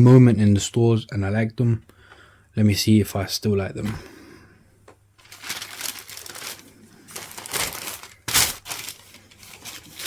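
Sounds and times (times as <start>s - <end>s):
tissue paper rustling: 5.2s - 10.0s.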